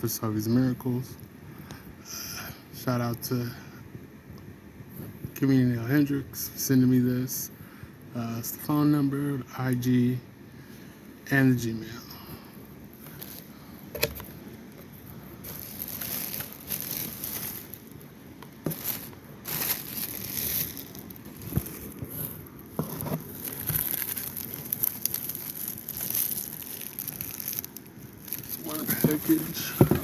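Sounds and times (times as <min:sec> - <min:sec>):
packaging crinkling and tearing: 0:13.0 - 0:30.0.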